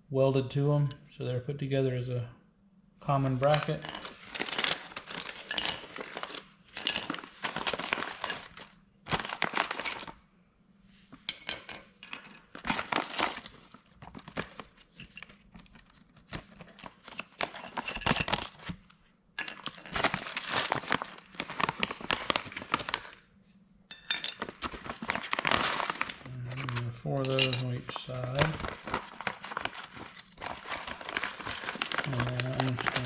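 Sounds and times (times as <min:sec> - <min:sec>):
rustling: 0:03.5 - 0:10.1, 0:24.3 - 0:33.0
metal hardware clinking and rattling: 0:03.6 - 0:08.7, 0:11.3 - 0:13.5, 0:16.8 - 0:18.7, 0:19.4 - 0:21.0, 0:23.9 - 0:33.0.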